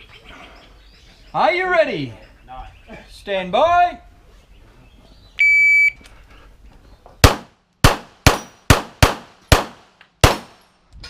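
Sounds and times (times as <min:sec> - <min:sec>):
pistol shots: 0:07.2 - 0:10.6.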